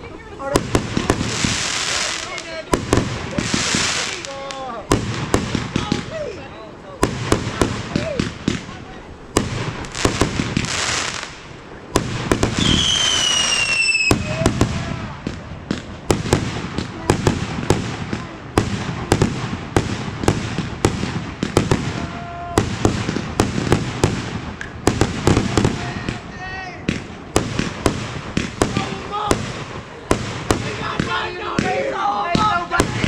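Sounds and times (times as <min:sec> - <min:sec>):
fireworks bangs and crackles: 0:00.0 - 0:33.0
whistling firework: 0:09.4 - 0:16.7.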